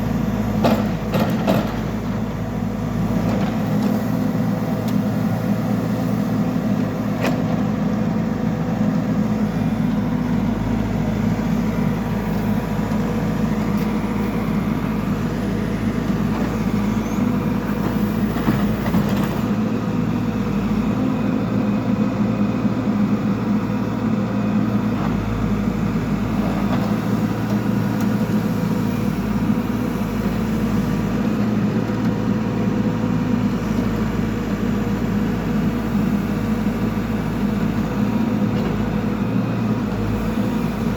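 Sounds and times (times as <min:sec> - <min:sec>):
backhoe diesel engine running: 0:00.0 - 0:40.9.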